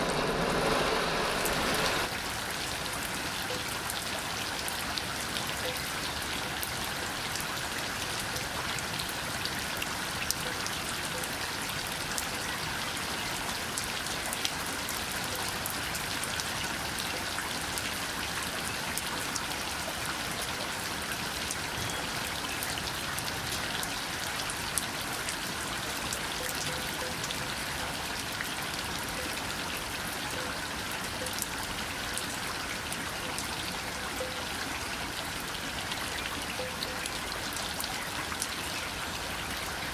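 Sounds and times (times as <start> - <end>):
rain hiss: 0.0 - 5.4
raindrops ticking on a surface: 0.0 - 39.9.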